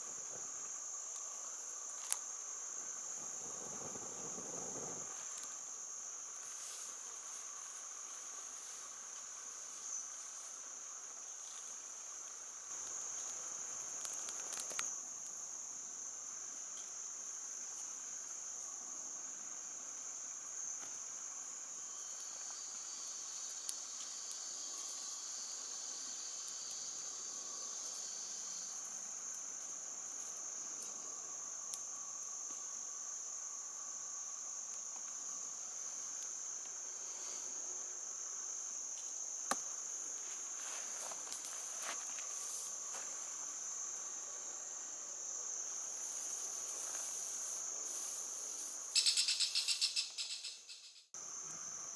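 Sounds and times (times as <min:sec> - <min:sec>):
low insect drone: 0:00.0 - 0:51.9
insects shrilling: 0:35.8 - 0:51.9.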